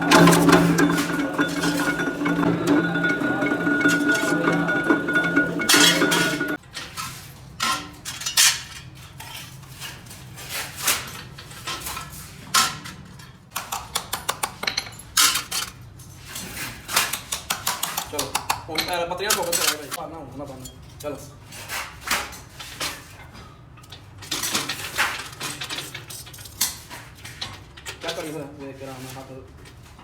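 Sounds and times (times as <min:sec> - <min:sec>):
machine humming high tone: 0:00.0 - 0:06.6.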